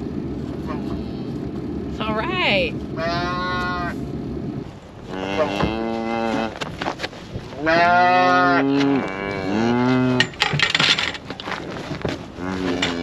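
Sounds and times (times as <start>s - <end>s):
cattle bawling: 2.9s - 4.0s, 5.0s - 6.7s, 7.6s - 10.6s, 12.3s - 13.0s.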